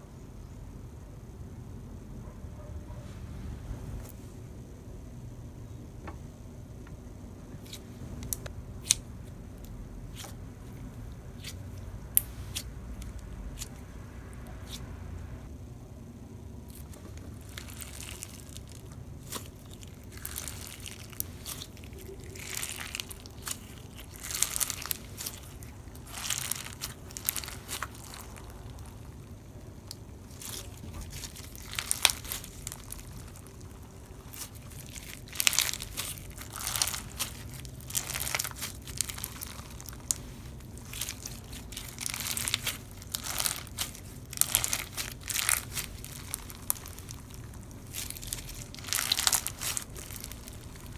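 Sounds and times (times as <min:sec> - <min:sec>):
slime squished by hand: 0:16.7 - 0:50.9.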